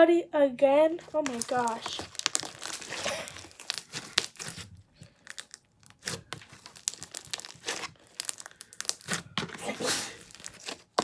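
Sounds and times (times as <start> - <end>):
sticky slime crackles and clicks: 1.0 - 9.3.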